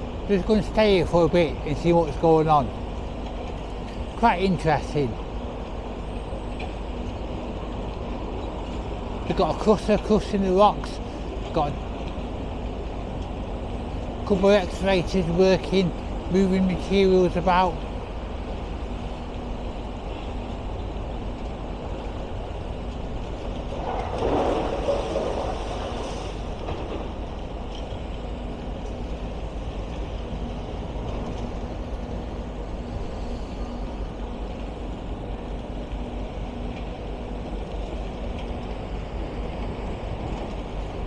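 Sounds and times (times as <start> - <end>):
machinery rumble: 0.0 - 41.0
faint hum: 10.2 - 41.0.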